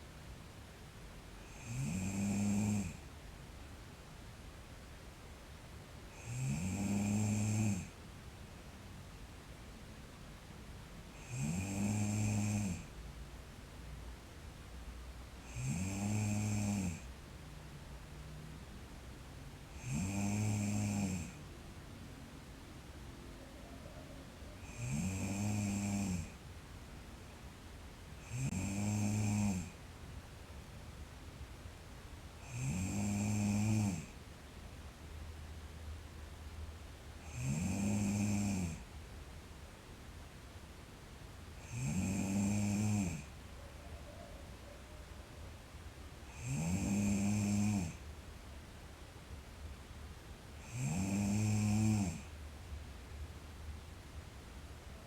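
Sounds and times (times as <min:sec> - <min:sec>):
quiet breathing: 0:00.0 - 0:03.6, 0:04.8 - 0:08.1, 0:19.6 - 0:21.6, 0:22.8 - 0:30.5, 0:40.2 - 0:48.4, 0:49.6 - 0:52.8
person snoring: 0:01.4 - 0:03.0, 0:06.1 - 0:08.0, 0:11.2 - 0:12.9, 0:15.4 - 0:17.1, 0:19.7 - 0:21.4, 0:24.6 - 0:26.4, 0:28.2 - 0:29.8, 0:32.4 - 0:34.2, 0:37.2 - 0:38.8, 0:41.6 - 0:43.3, 0:46.3 - 0:48.0, 0:50.6 - 0:52.3.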